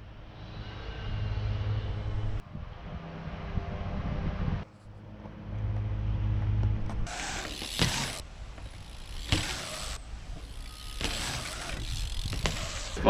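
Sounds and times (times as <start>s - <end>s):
low hum: 0.0s - 13.0s
bike rattling and clicking: 6.6s - 13.0s.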